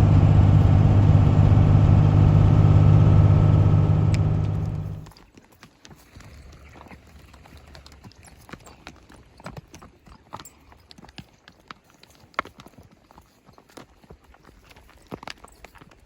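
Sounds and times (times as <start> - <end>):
horse hooves clip-clopping: 8.1 - 16.0.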